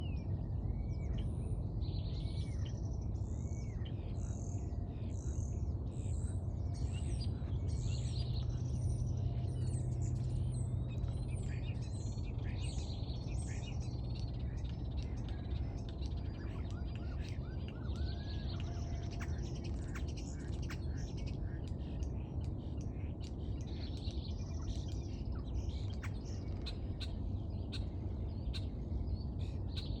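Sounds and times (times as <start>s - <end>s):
steady low rumble: 0.0s - 30.0s
birds chirping: 6.2s - 30.0s.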